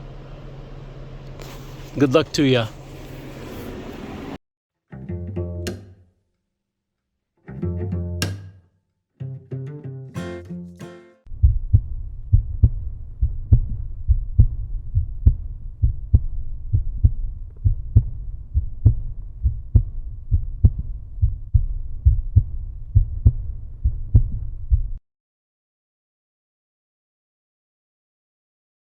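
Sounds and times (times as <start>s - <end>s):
bass-heavy beat: 10.2s - 25.0s.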